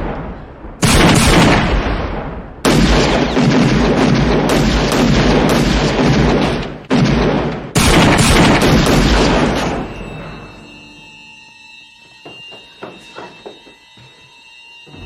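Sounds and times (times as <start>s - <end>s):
loud booming gunshots: 0.0s - 10.1s.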